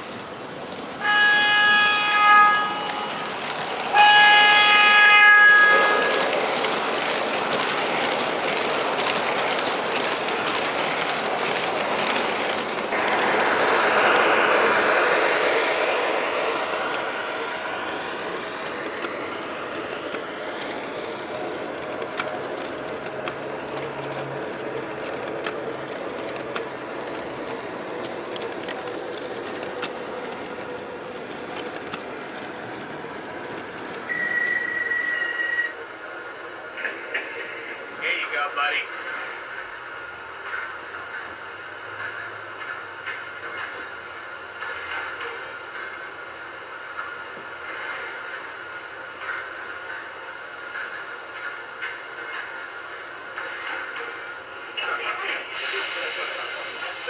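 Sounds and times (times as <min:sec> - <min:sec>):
wheels clicking on track: 0:00.0 - 0:35.7
model train running: 0:00.0 - 0:57.0
model train horn blast: 0:01.0 - 0:03.2, 0:03.9 - 0:06.2.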